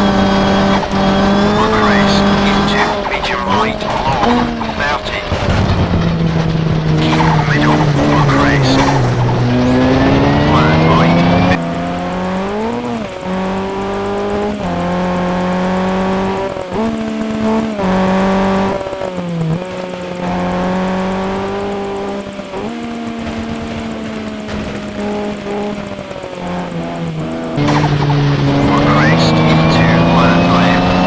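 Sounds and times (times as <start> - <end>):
turbocharged car engine pulling hard: 0.0 - 31.0.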